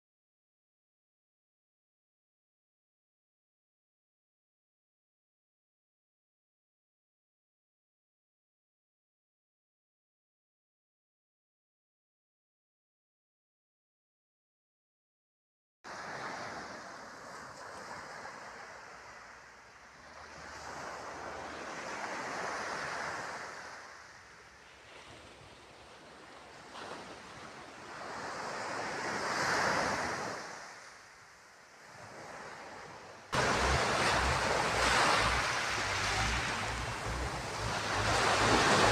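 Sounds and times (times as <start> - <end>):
sea waves washing in: 15.9 - 38.9
wind buffeting microphone: 33.4 - 38.9.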